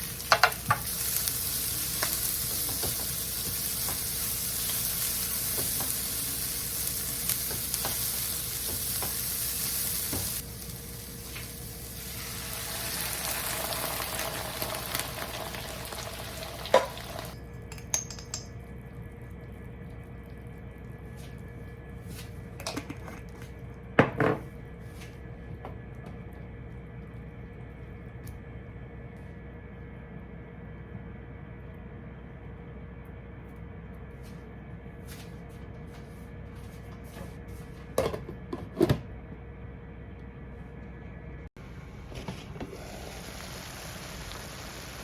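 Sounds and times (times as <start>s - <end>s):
food sizzling in a pan: 0.0s - 17.4s, 42.7s - 45.0s.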